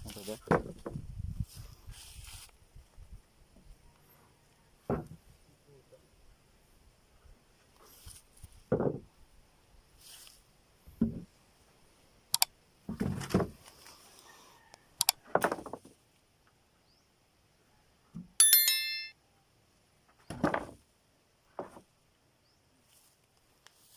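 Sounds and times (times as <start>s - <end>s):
metallic ring: 18.4s - 19.2s.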